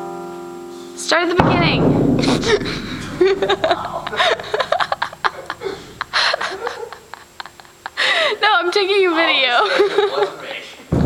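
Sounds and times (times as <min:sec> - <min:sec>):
people laughing: 0:03.2 - 0:10.8.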